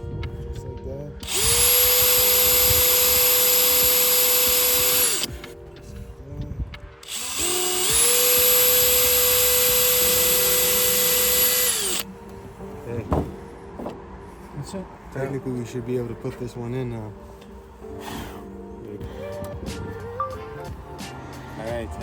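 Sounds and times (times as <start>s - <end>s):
power drill whining: 1.2s - 5.5s, 7.0s - 12.1s.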